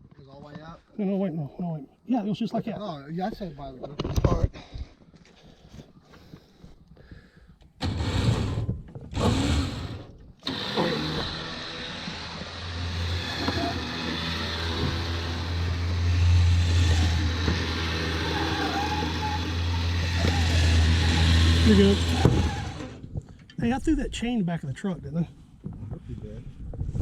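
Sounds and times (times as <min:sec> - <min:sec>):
excavator engine cranking: 0:07.8 - 0:23.1.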